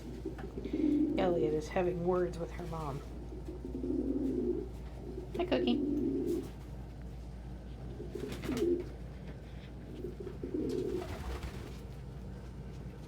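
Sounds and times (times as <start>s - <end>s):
pigeons cooing: 0.0s - 1.8s, 2.6s - 6.6s, 7.9s - 9.0s, 9.8s - 11.9s.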